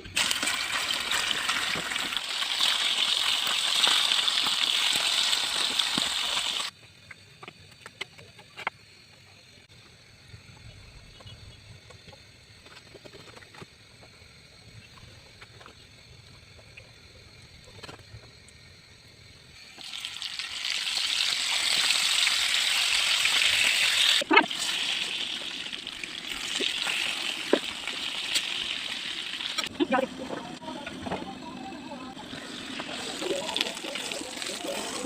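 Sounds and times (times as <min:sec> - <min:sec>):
food sizzling in hot oil: 0:00.0 - 0:06.8, 0:19.2 - 0:35.0.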